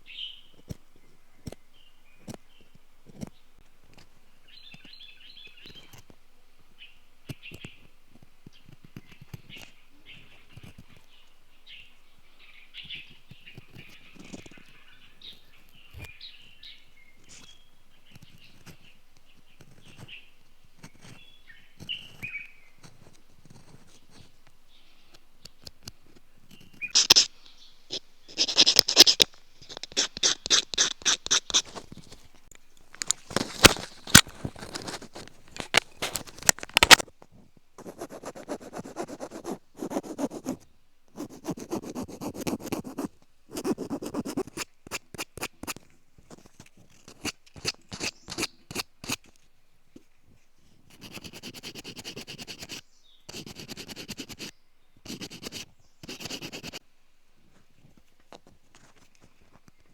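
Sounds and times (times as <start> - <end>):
faint bird chirps: 0.0 - 35.0, 47.0 - 49.2
scratching and scraping strokes: 12.8 - 16.1, 17.2 - 20.2, 20.8 - 24.4, 25.7 - 37.1, 37.8 - 49.4, 50.0 - 54.5, 55.1 - 56.8
sharp clicks: 25.4 - 37.1.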